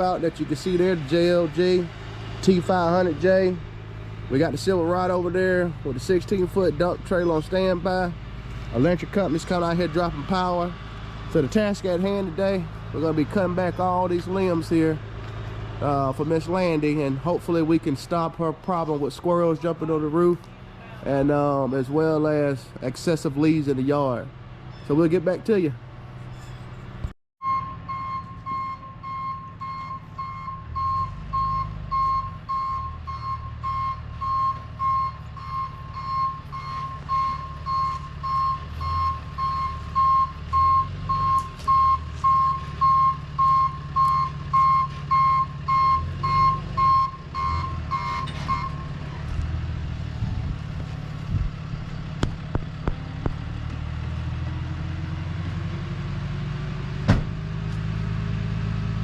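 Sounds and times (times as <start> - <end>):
engine running: 0.0 - 59.0
vehicle backup alarm beeping: 27.4 - 49.1.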